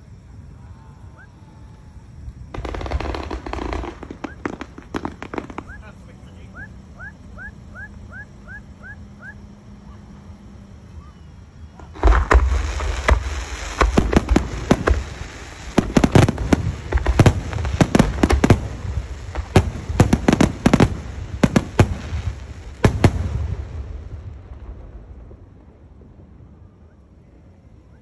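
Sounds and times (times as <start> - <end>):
low continuous rumble: 0.0 - 28.0
fireworks bangs: 2.4 - 9.0, 11.7 - 27.2.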